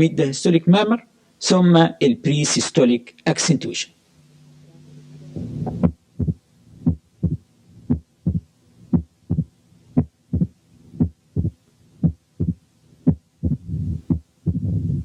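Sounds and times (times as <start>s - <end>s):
heartbeat sounds: 5.6s - 15.0s.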